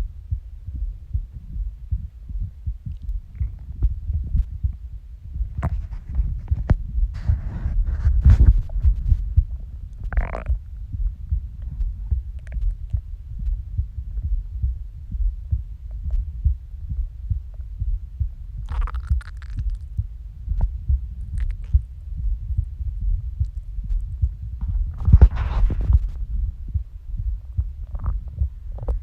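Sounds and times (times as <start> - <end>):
heartbeat pulsing: 0.0 - 29.0
gurgling stomach growls: 10.0 - 10.7, 18.6 - 19.9, 21.2 - 21.9.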